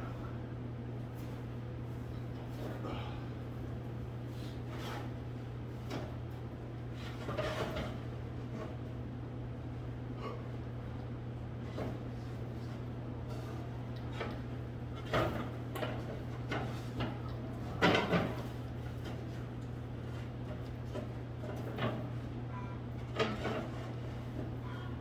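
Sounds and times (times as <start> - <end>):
steady low hum: 0.0 - 5.7.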